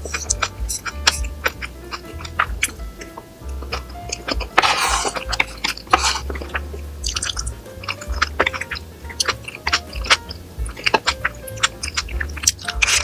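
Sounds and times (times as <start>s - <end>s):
quiet background music: 0.0s - 13.0s
rustling bursts: 0.0s - 13.0s.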